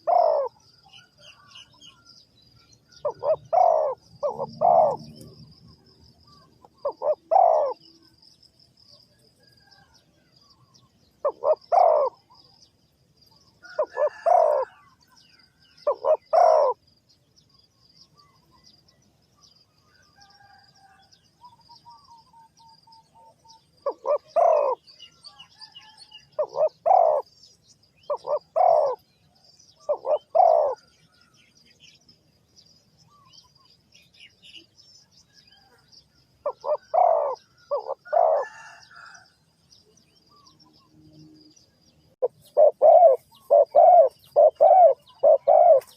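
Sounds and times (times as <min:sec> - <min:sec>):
dove cooing: 0:00.0 - 0:02.0, 0:03.0 - 0:05.5, 0:06.3 - 0:07.9, 0:11.2 - 0:12.5, 0:13.6 - 0:14.8, 0:15.8 - 0:16.8, 0:23.2 - 0:27.3, 0:28.0 - 0:30.9, 0:36.4 - 0:39.2, 0:42.2 - 0:45.9.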